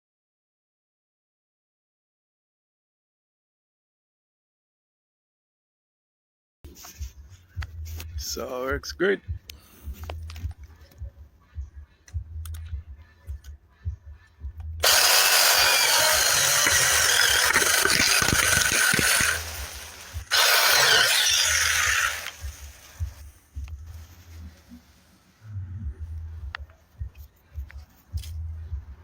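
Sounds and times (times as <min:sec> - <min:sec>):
electric chainsaw running: 0:14.8 - 0:23.2.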